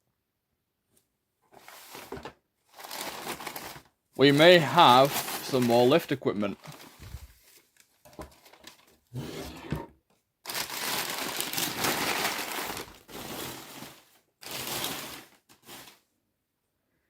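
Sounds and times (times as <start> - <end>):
newspaper crumpling and rustling: 1.5 - 9.1, 10.4 - 16.0.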